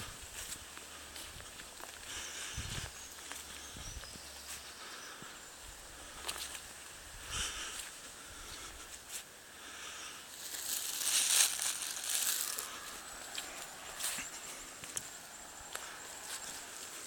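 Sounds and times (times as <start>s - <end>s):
rustling and crunching: 10.3s - 17.0s.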